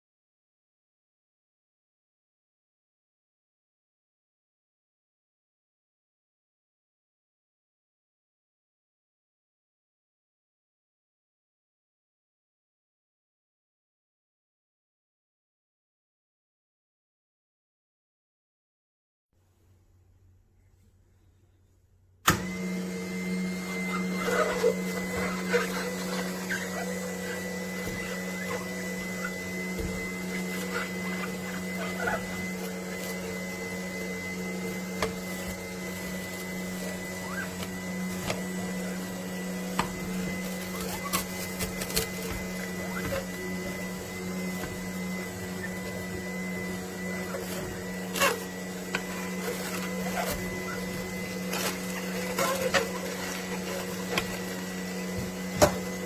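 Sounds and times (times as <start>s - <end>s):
juicer motor humming: 22.2s - 56.0s.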